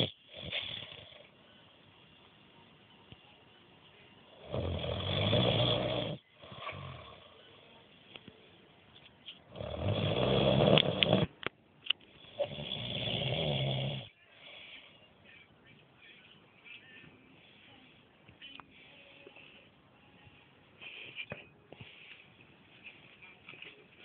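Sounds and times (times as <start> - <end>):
quiet breaths: 0.0 - 24.0
man snoring: 4.4 - 7.3, 9.5 - 11.3, 12.2 - 14.6.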